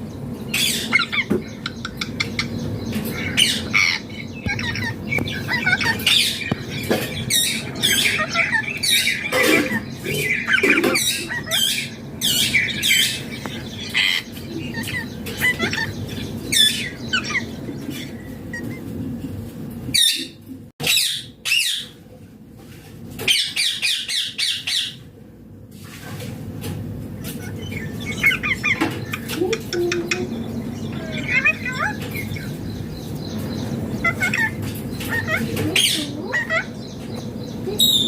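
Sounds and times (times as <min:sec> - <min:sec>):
parakeet chattering calls: 0:00.5 - 0:18.9, 0:27.2 - 0:38.0
parakeet squawking: 0:00.5 - 0:19.0, 0:27.2 - 0:37.0.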